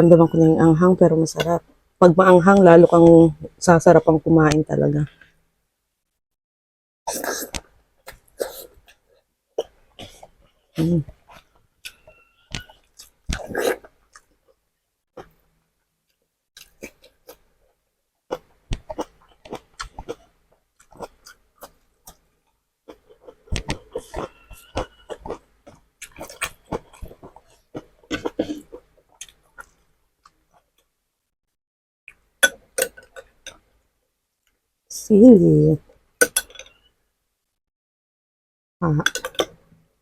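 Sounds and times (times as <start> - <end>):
person chewing with wet mouth sounds: 7.4 - 14.6, 16.6 - 30.9.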